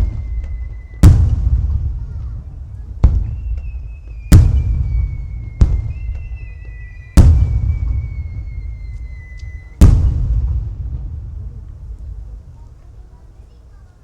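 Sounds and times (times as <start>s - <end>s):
high descending whistle: 0.0s - 1.2s, 3.2s - 9.8s
firework shells bursting: 0.0s - 13.6s.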